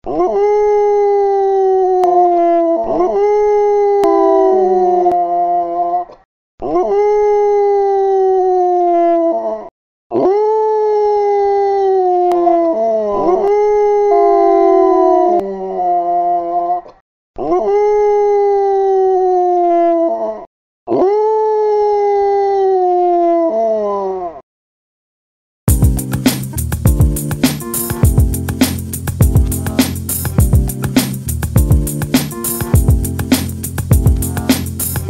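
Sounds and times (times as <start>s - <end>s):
dog howling: 12.7s - 15.4s.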